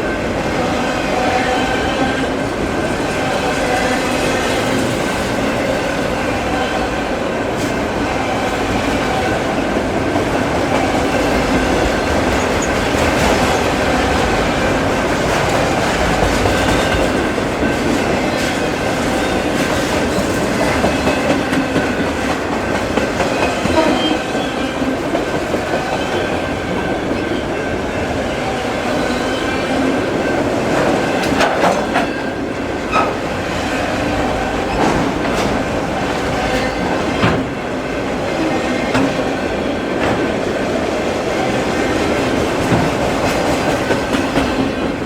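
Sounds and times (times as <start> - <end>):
train wheels rumbling on rails: 0.0 - 45.0
clacking over rail joints: 30.2 - 37.6, 42.0 - 45.0.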